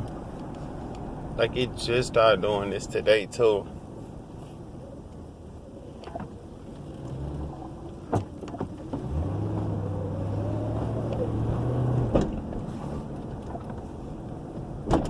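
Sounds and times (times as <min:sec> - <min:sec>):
car engine hum from inside: 0:00.0 - 0:15.0.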